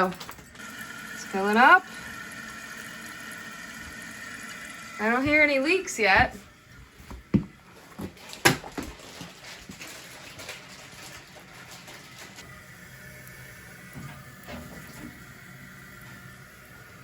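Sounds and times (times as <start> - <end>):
toilet tank filling hiss: 0.6 - 5.6, 12.4 - 17.0.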